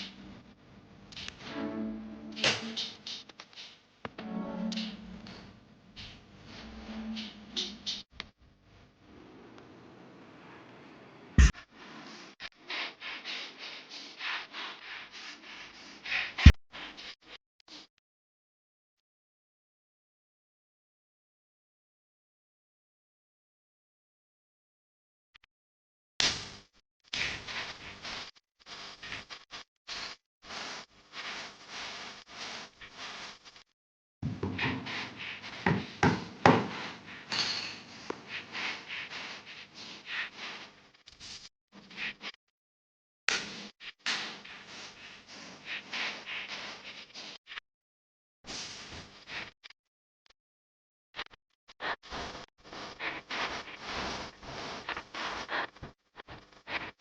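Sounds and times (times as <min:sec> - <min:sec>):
rustling and scraping: 0:34.2 - 0:42.3, 0:43.4 - 0:47.6, 0:51.8 - 0:57.0.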